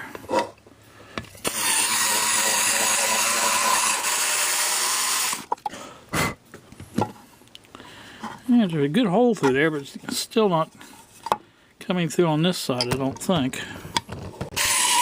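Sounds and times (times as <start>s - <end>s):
electric drill cutting epoxy: 1.4s - 5.5s, 14.6s - 15.0s.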